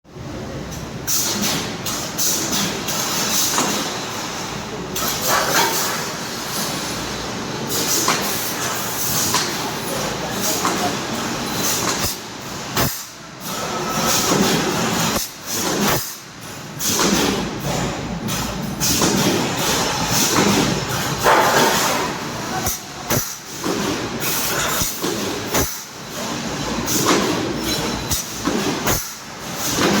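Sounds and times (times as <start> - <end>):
spot-welding machinery clattering: 7.7 - 30.0.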